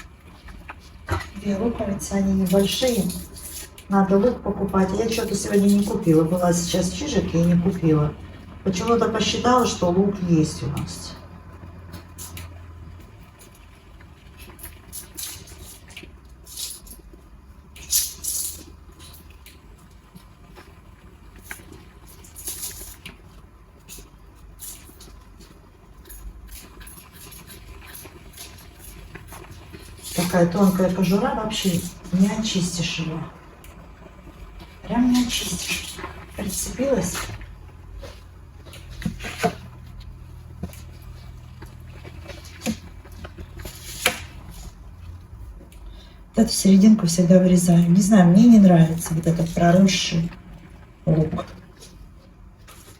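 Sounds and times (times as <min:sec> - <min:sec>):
onion skin crackling and rustling: 0:11.2 - 0:46.4.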